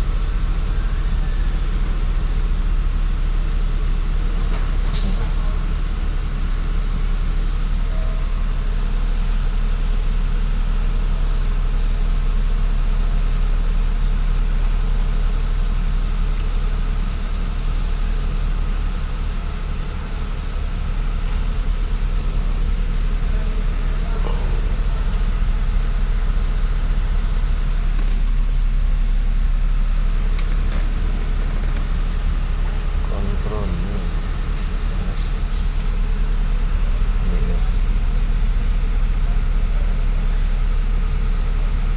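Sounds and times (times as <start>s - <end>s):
car engine idling: 0.0s - 41.9s.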